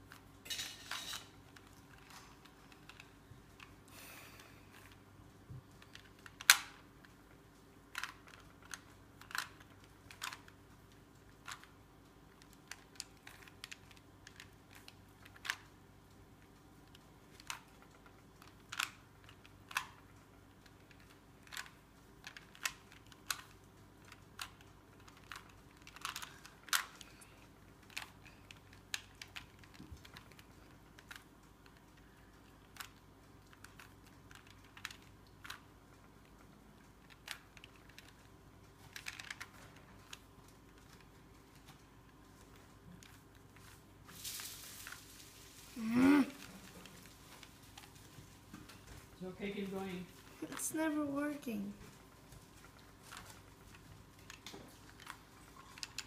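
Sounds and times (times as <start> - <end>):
puzzle cube plastic clicks: 5.7 - 15.8, 16.4 - 43.8, 52.6 - 56.0.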